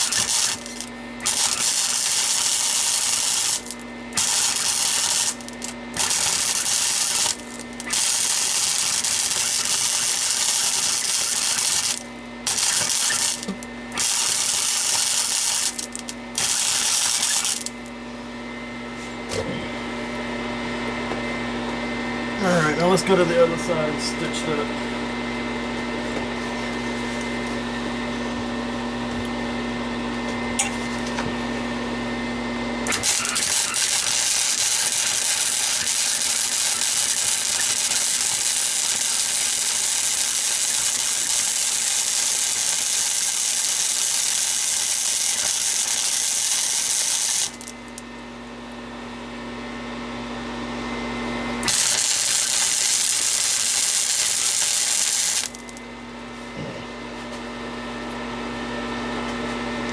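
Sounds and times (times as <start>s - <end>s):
welding arc crackling hiss: 0.0s - 17.9s, 32.8s - 48.1s, 51.6s - 55.9s
steady electrical hum: 0.0s - 59.9s.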